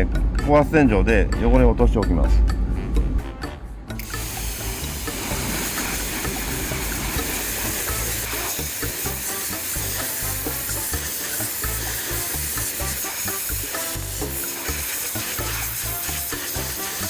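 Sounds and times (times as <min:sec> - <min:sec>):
pressure washer spraying water: 0:04.0 - 0:17.0.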